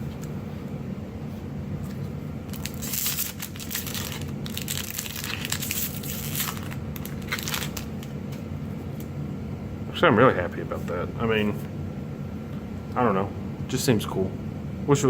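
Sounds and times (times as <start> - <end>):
low background hum: 0.0 - 15.0
foil wrapper crinkling and tearing: 2.4 - 8.2.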